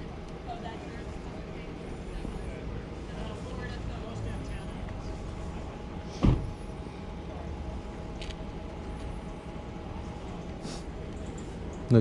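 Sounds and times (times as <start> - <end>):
low rumble of motor vehicles: 0.0 - 12.0
sharp thump: 6.2 - 6.6.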